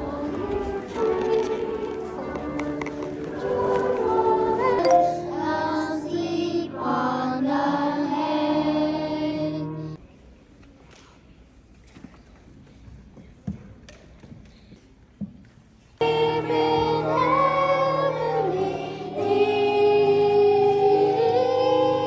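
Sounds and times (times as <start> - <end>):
choir-like held singing tones: 0.0 - 10.0, 16.0 - 22.0.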